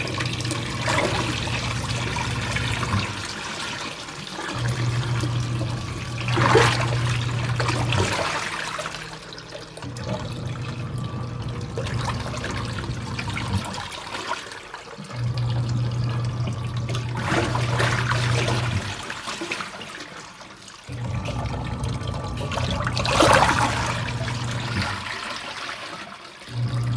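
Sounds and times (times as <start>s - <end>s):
washing machine motor humming: 0.0s - 26.9s
water sloshing in drum: 0.0s - 26.9s.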